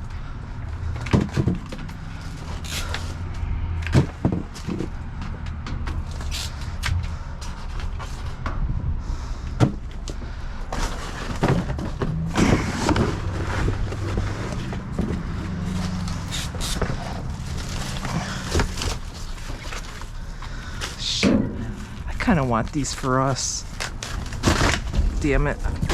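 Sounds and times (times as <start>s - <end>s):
bags rustling: 10.6s - 25.9s.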